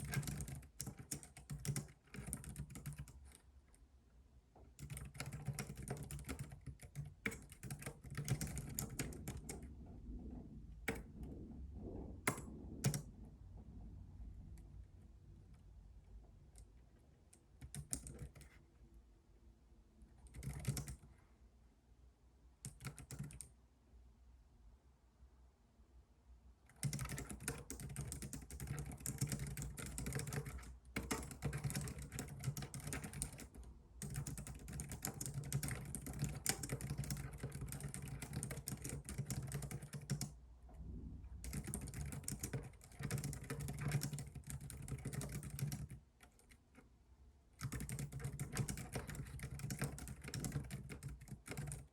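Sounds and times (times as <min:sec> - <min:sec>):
keyboard typing: 0:00.0 - 0:03.4, 0:04.7 - 0:13.1, 0:16.4 - 0:18.6, 0:20.2 - 0:21.1, 0:22.6 - 0:23.5, 0:26.7 - 0:40.4, 0:41.4 - 0:46.8, 0:47.6 - 0:51.9.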